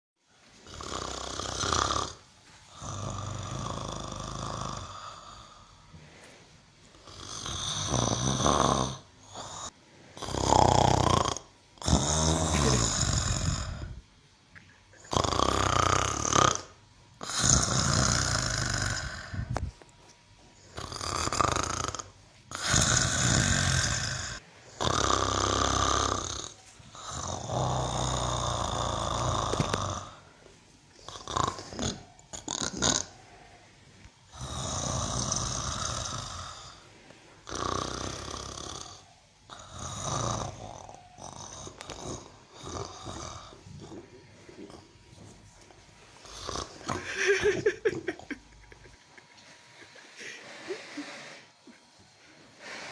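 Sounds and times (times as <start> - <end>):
cow snoring: 0.6 - 5.8, 6.9 - 14.0, 15.1 - 19.6, 20.7 - 30.3, 31.1 - 33.6, 34.3 - 45.0, 46.2 - 47.1.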